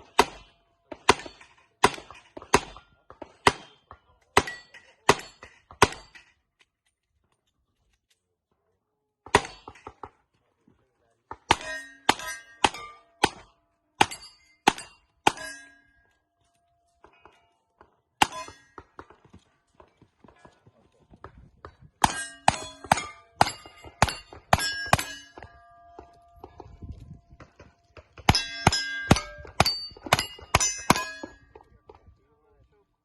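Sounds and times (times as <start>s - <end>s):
steel plates clanging and ringing: 4.4s - 6.4s, 11.5s - 16.3s, 17.0s - 18.8s, 22.0s - 26.7s, 27.5s - 31.6s.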